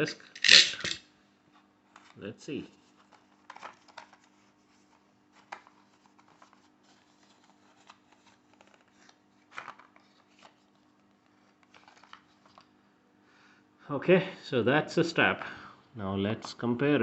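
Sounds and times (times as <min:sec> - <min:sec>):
packaging rustles and clicks: 0:03.0 - 0:12.7.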